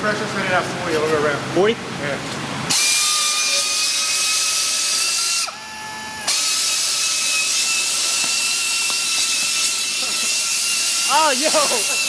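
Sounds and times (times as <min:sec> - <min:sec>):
pneumatic wrench whining: 0:02.7 - 0:12.0.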